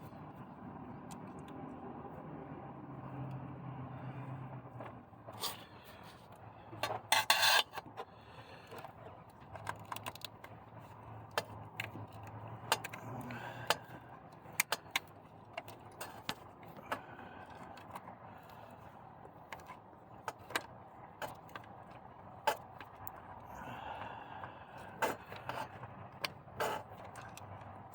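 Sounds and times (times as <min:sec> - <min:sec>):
metal tools clinking and scraping: 0:06.8 - 0:08.0.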